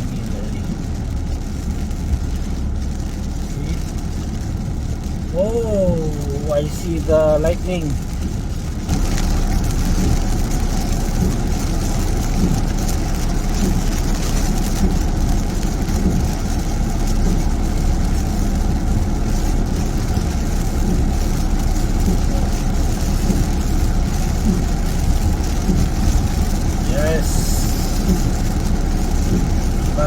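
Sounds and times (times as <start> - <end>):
car engine and tyres on wet road: 0.0 - 30.0
rain on car body: 0.0 - 30.0.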